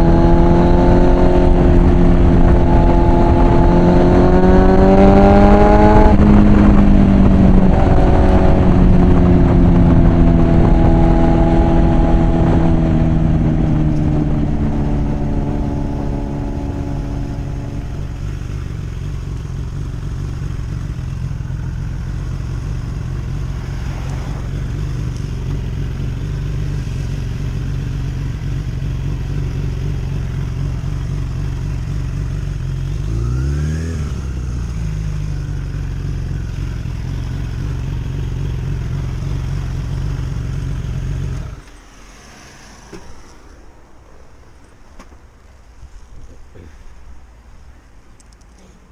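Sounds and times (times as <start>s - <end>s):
motorcycle engine through loud exhaust: 0.0s - 42.0s.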